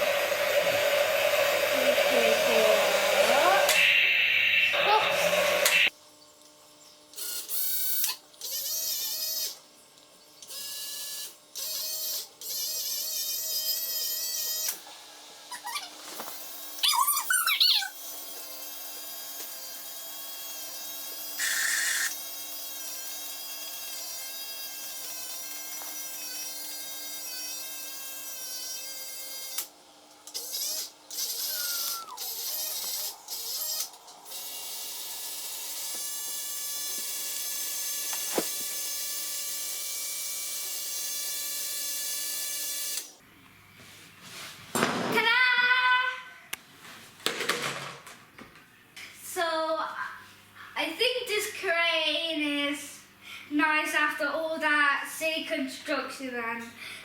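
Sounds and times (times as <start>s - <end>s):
small electric motors whining: 0.0s - 9.7s, 10.3s - 43.2s
voice: 1.7s - 3.8s, 4.8s - 5.4s, 49.2s - 50.2s, 50.8s - 56.8s.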